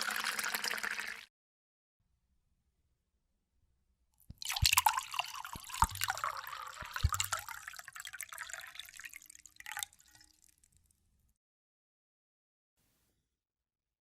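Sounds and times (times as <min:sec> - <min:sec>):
liquid pouring and splashing: 0:00.0 - 0:01.3, 0:04.3 - 0:10.9.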